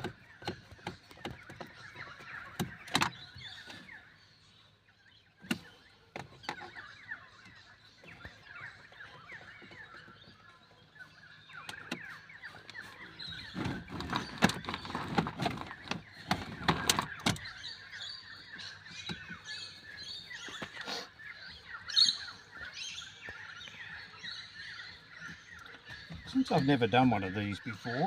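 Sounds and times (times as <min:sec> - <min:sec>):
sharp clicks and knocks of parts: 0:00.0 - 0:03.8, 0:05.4 - 0:06.8
birds chirping: 0:00.0 - 0:28.0.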